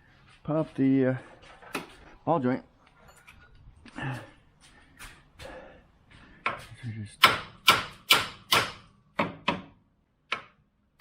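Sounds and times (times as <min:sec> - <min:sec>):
hammer striking metal: 0:07.2 - 0:09.7.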